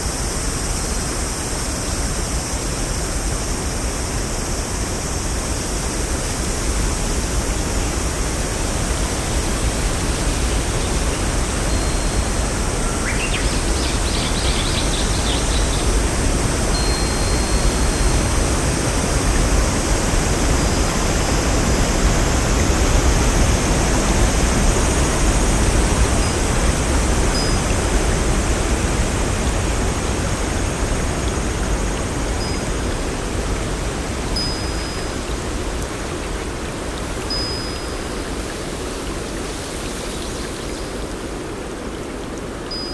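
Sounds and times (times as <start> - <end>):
rushing water: 0.0 - 42.9
faint high chirps: 16.7 - 18.4.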